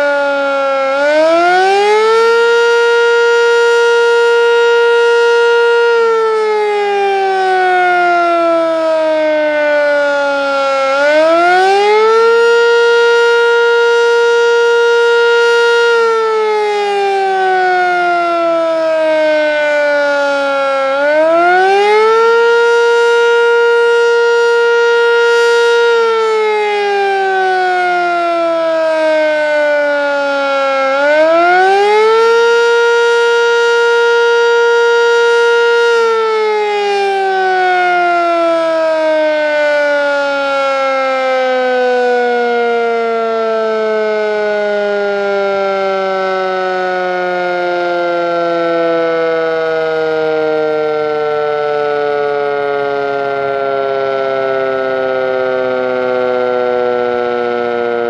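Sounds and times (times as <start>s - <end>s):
warning siren rising and falling: 0.0s - 58.0s.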